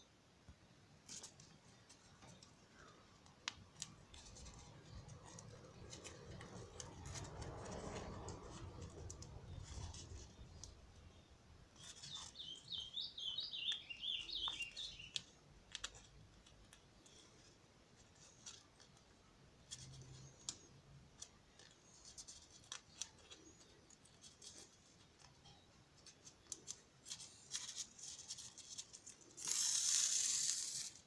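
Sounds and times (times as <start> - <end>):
small bird chirping: 9.1 - 16.0.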